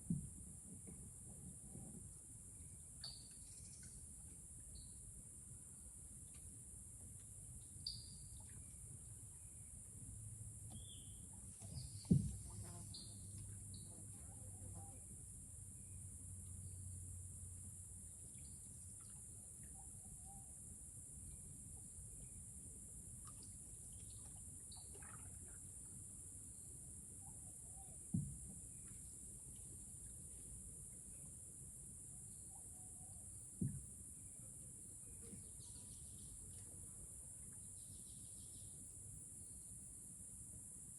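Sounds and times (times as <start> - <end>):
knock against canoe: 0.0 - 1.0, 11.7 - 12.6, 28.1 - 28.6, 33.6 - 33.9
low thump: 0.0 - 1.0, 11.7 - 12.6, 28.1 - 28.6, 33.6 - 33.9
bird chirps: 10.7 - 15.0.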